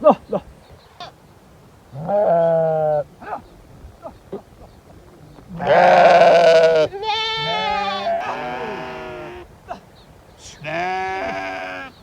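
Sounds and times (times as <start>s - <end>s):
sheep bleating: 2.0s - 3.0s, 5.5s - 9.5s, 10.6s - 12.0s.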